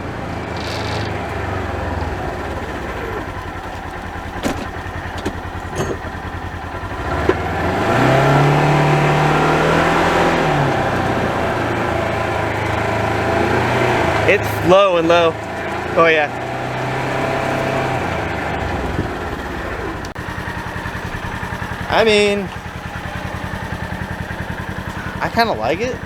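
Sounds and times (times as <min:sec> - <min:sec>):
vehicle engine revving: 0:00.0 - 0:26.0
short knocks: 0:02.7 - 0:06.6.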